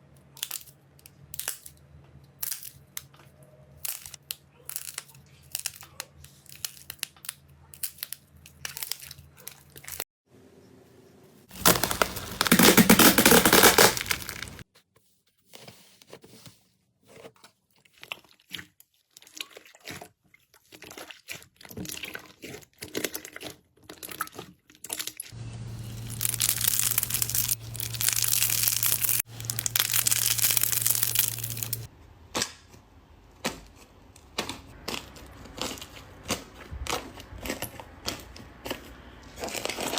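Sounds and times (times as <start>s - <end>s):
dense crackling and crunching: 11.5s - 14.6s, 25.7s - 31.9s
slime squeezed by hand: 11.5s - 14.6s, 25.8s - 31.9s.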